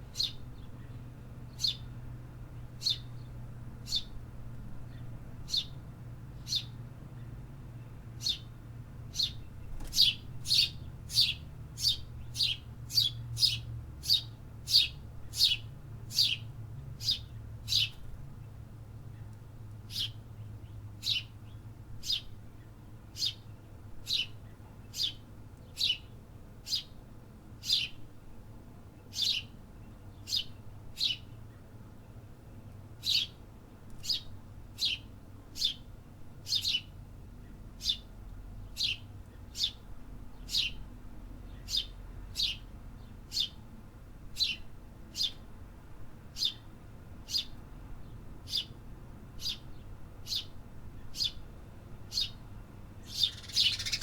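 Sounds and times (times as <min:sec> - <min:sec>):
faint low city hum: 0:00.0 - 0:54.0
bird chirping: 0:00.1 - 0:01.9, 0:02.8 - 0:04.2, 0:04.9 - 0:05.8, 0:06.4 - 0:06.8, 0:08.2 - 0:08.5, 0:09.1 - 0:18.0, 0:19.9 - 0:22.3, 0:23.2 - 0:23.5, 0:24.1 - 0:26.9, 0:27.6 - 0:28.0, 0:29.1 - 0:31.3, 0:33.0 - 0:33.4, 0:34.0 - 0:35.8, 0:36.5 - 0:36.9, 0:37.8 - 0:40.8, 0:41.5 - 0:43.6, 0:44.4 - 0:45.4, 0:46.4 - 0:46.7, 0:47.3 - 0:48.8, 0:49.4 - 0:51.4, 0:52.1 - 0:52.4, 0:53.0 - 0:54.0.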